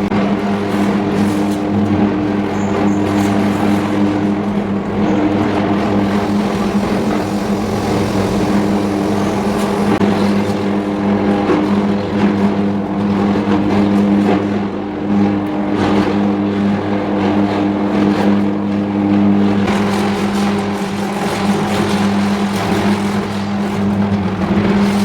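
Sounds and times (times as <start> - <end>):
loud electrical hum: 4.6 - 11.0
electric arcs crackling: 6.0 - 10.1.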